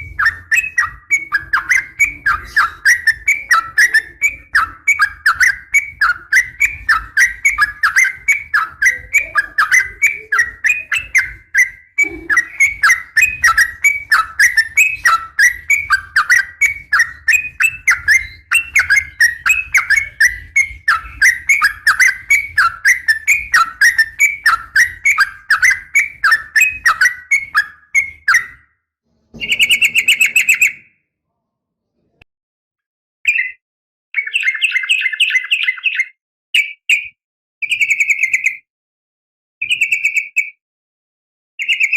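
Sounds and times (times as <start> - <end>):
bird trill: 0.0 - 28.7, 29.4 - 31.0, 33.3 - 33.6, 34.2 - 38.6, 39.6 - 40.6, 41.6 - 41.9
bird chattering call: 29.4 - 30.9.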